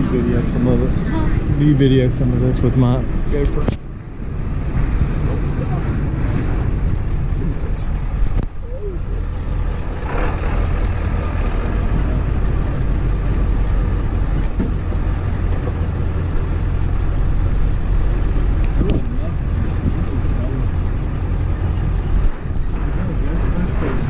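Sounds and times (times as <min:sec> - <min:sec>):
vehicle engine and road noise: 0:00.0 - 0:24.0.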